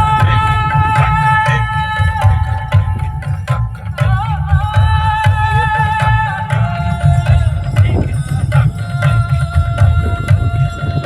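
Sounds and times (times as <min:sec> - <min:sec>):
pulsing drumbeat: 0:00.0 - 0:11.0.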